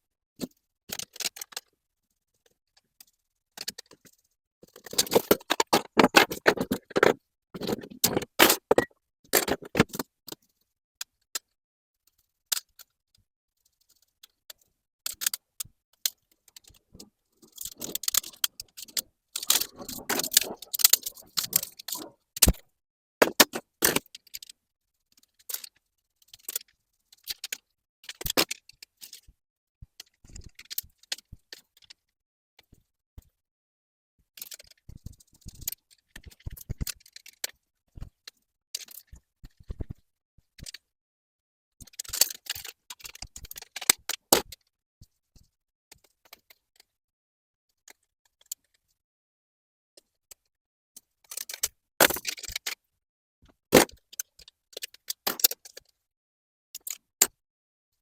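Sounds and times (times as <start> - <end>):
clicks and rattles: 0.4 - 1.8, 2.8 - 12.9, 13.6 - 24.6, 25.2 - 32.0, 41.8 - 44.6.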